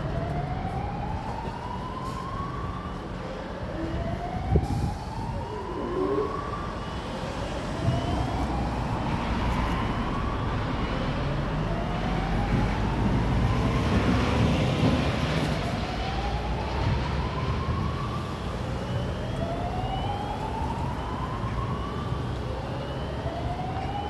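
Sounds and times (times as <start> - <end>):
fire alarm whooping sweep: 4.4 - 6.9.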